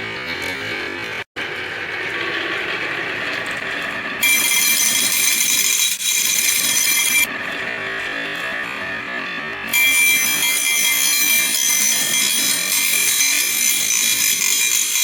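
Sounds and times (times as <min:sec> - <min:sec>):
marbles rattling along marble run: 0:02.1 - 0:07.3.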